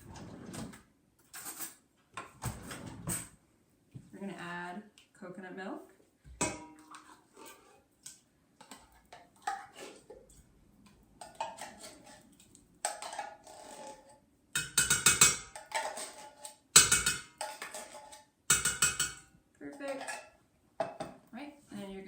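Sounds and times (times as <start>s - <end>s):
spoon scraping metal can: 6.8s - 10.4s, 11.2s - 19.0s
spoon clinking against pot: 14.6s - 15.6s, 16.8s - 19.3s.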